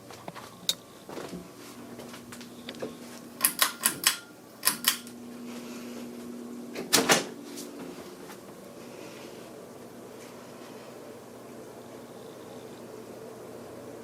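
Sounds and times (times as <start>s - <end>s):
electric fan hum: 0.0s - 14.0s
pull-chain switch clicking: 3.4s - 5.2s.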